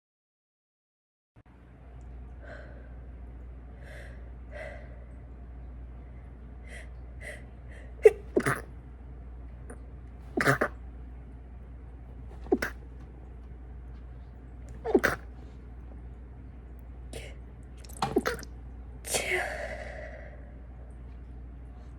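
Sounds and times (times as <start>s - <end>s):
breathy catches: 12.0s - 15.9s, 17.2s - 18.5s
woman sneezing: 14.8s - 15.2s.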